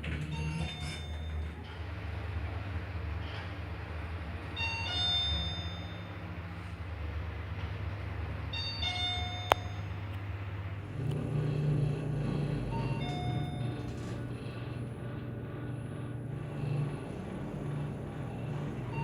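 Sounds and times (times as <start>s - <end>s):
elevator two-note chime: 4.6s - 6.3s, 8.5s - 10.1s, 12.6s - 14.2s
low steady hum: 8.5s - 19.0s.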